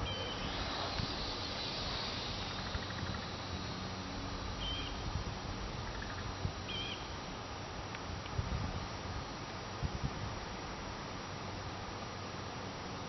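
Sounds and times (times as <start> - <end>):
wind noise on microphone: 0.0 - 7.2, 7.9 - 10.6.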